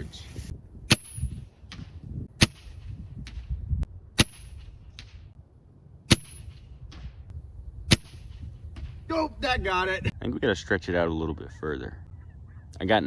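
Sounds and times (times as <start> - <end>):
pellet rifle shots: 0.9 - 3.4, 4.2 - 5.2, 6.1 - 7.1, 7.9 - 9.0.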